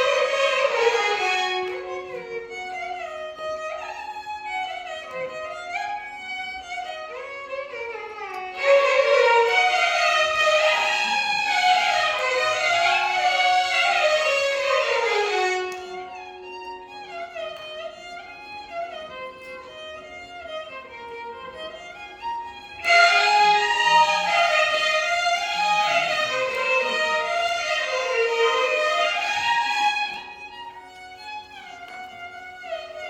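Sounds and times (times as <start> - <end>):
violin ensemble melody: 0.0 - 33.0.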